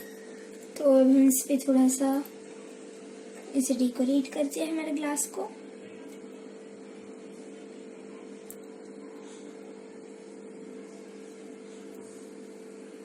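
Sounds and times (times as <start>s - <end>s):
low background hum with hiss: 0.0s - 13.0s.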